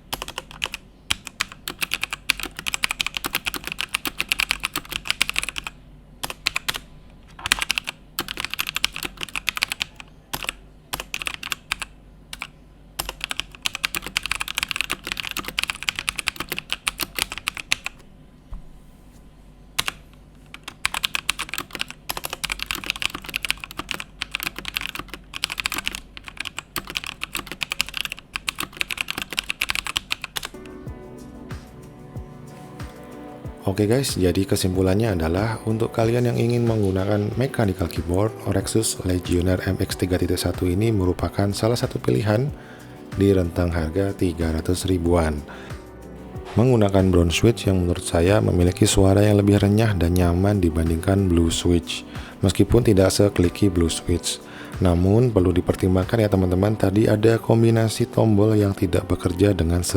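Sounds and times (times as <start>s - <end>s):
mechanical keyboard typing: 0.1s - 6.8s, 7.4s - 18.0s, 19.8s - 30.8s, 39.2s - 45.0s
background music: 30.4s - 59.9s.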